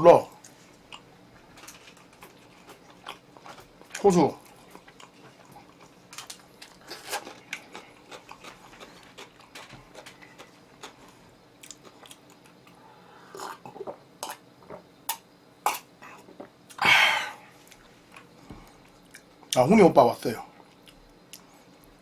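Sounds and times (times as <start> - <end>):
chewing and biting chicken: 1.9 - 12.7.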